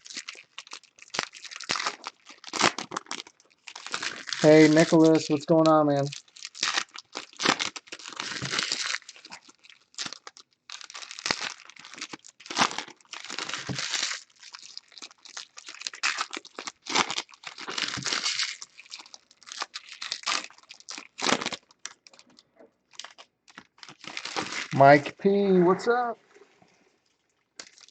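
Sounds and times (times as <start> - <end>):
plastic packaging crinkling and tearing: 0.0 - 25.2, 27.0 - 27.9.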